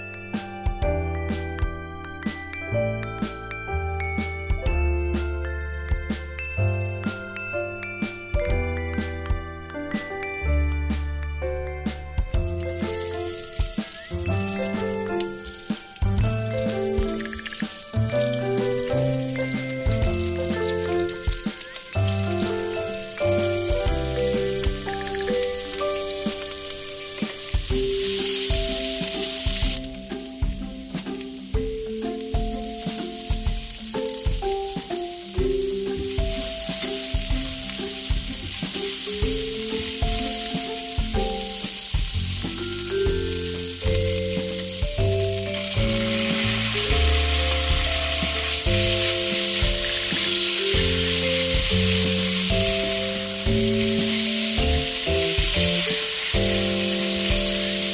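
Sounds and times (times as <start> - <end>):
background music: 0.0 - 57.9
food sizzling in hot oil: 12.3 - 57.9.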